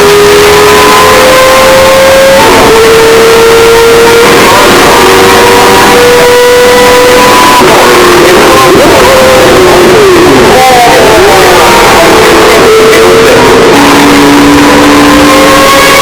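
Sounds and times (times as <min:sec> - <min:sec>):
rotary engine at high revs: 0:00.0 - 0:16.0.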